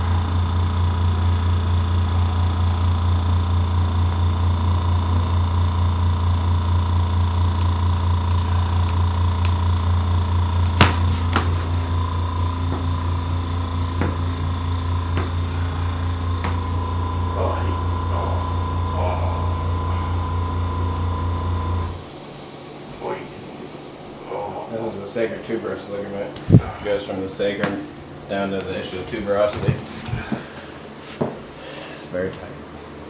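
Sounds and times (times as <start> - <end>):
low machine hum: 0.0 - 33.0.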